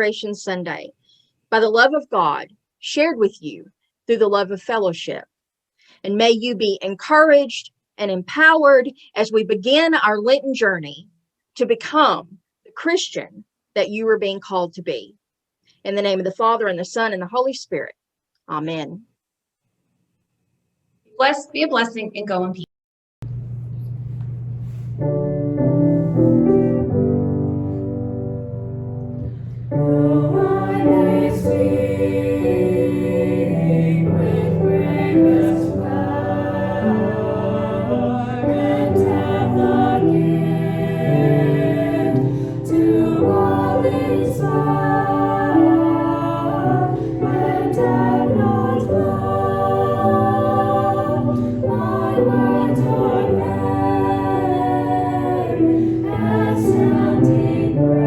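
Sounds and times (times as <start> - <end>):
keyboard chords: 25.0 - 58.0
choir-like singing: 29.7 - 58.0.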